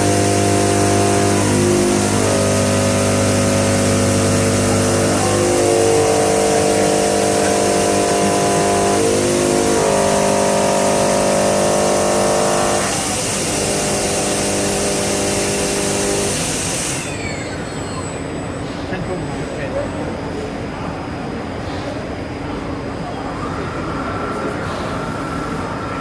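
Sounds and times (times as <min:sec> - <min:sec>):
machine hissing: 0:00.0 - 0:18.9
machine whining tones: 0:00.0 - 0:19.0, 0:22.8 - 0:26.0.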